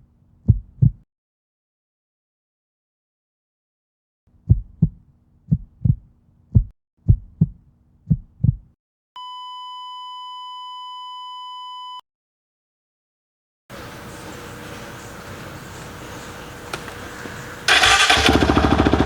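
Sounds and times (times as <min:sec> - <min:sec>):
heartbeat thumps: 0:00.4 - 0:01.0, 0:04.4 - 0:08.8.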